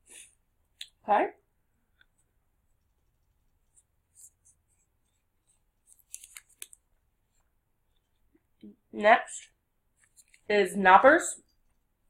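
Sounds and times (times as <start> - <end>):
snack packaging crinkling: 5.9 - 6.8.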